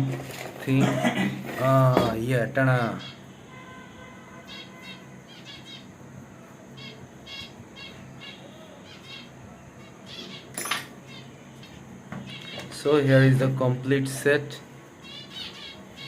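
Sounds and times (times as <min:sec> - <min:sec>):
small birds chirping: 0:02.8 - 0:03.5, 0:04.4 - 0:13.2, 0:14.0 - 0:16.0.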